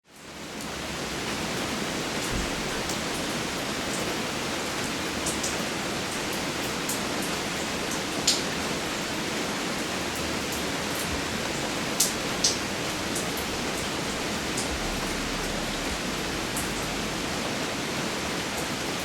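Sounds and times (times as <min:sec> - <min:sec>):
rain hissing: 0:09.2 - 0:19.0
raindrops ticking: 0:09.8 - 0:18.1.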